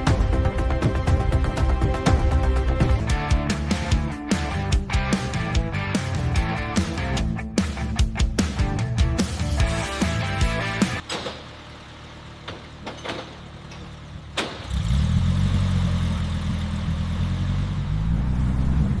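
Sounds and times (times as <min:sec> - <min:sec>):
car engine starting and idling: 0:09.3 - 0:19.0.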